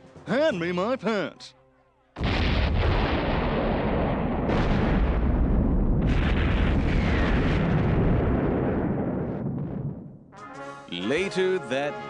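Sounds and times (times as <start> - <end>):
explosions and artillery bombardment: 2.2 - 10.2.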